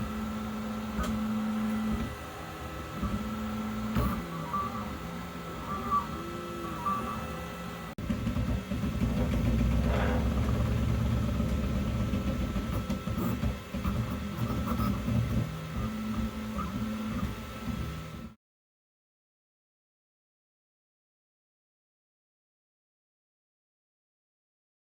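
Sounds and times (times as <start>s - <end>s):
printer stepper motors buzzing: 0.0s - 18.4s.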